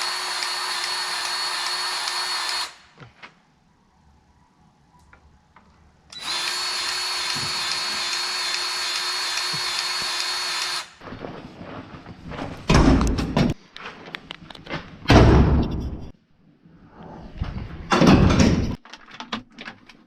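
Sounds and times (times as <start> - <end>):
small electric motor whirring: 0.0 - 2.8, 6.1 - 11.0.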